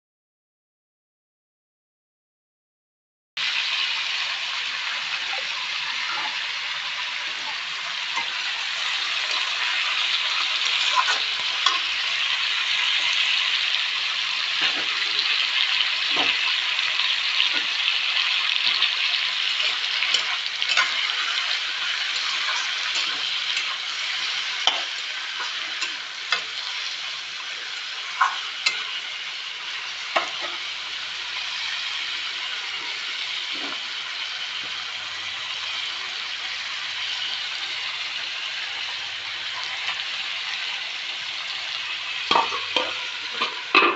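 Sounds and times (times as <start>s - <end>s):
chicken sizzling in a pan: 3.4s - 43.9s
utensil clicking against pan: 24.6s - 26.5s.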